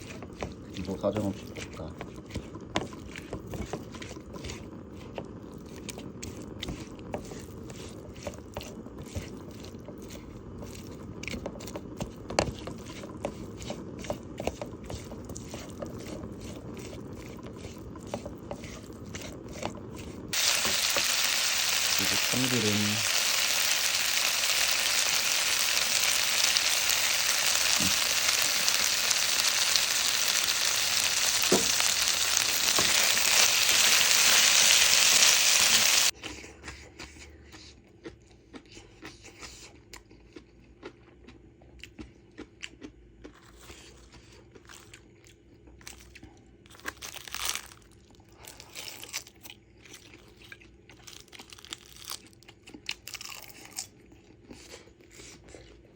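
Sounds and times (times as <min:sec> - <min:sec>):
crunching and chewing: 0:00.0 - 0:35.4, 0:36.2 - 0:55.9
rice sizzling in a pan: 0:00.0 - 0:36.2.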